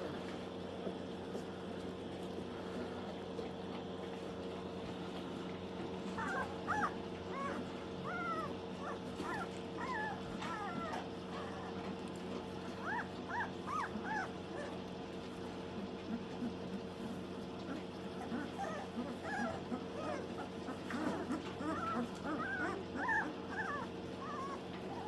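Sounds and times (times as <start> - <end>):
puppies whimpering and yipping: 5.8 - 25.0.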